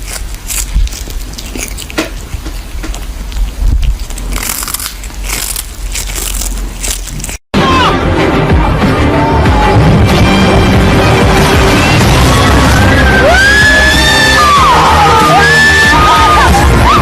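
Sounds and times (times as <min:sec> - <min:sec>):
close-up crunching and crackling: 0:00.0 - 0:07.5.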